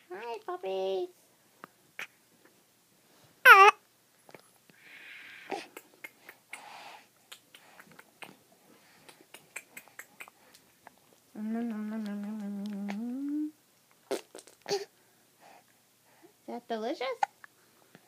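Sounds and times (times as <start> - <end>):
person humming: 11.3 - 13.6.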